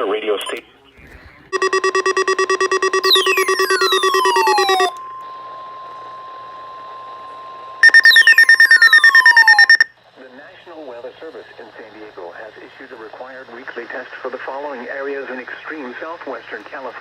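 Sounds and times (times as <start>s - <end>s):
rapid pulsing alert beeps: 1.5s - 5.0s, 7.8s - 9.9s
steady warning alarm tone: 1.5s - 5.6s, 7.8s - 9.9s.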